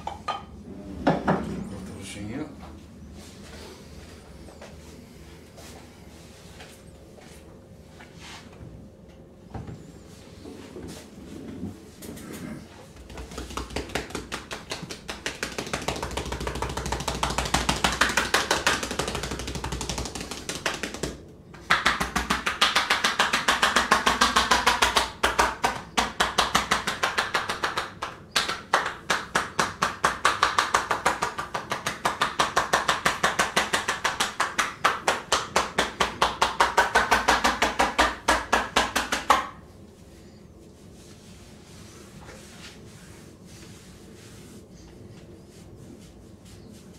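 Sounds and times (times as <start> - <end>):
hands slapping on a body: 13.0 - 39.6.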